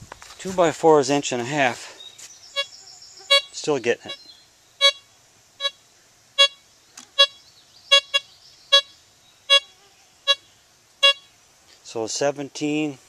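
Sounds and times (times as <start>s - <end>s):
metal detector beeping: 3.3s - 4.2s, 4.8s - 5.8s, 6.4s - 9.7s, 10.3s - 11.3s.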